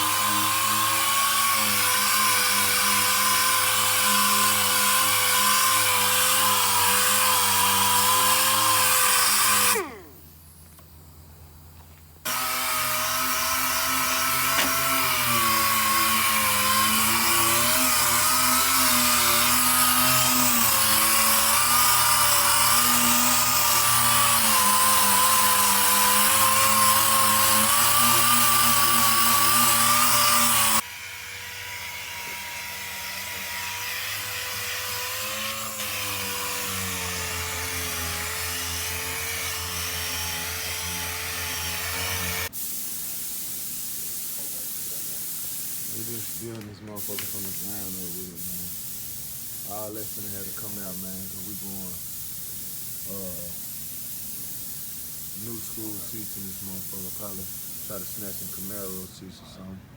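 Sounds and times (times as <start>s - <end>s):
power tool whining: 0.0s - 10.9s, 12.2s - 42.5s.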